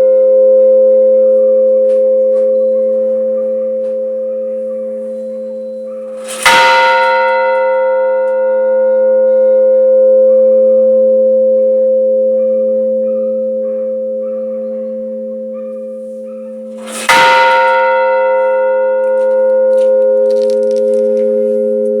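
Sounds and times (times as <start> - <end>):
deep bell struck and ringing: 1.5 - 10.4, 12.0 - 22.0.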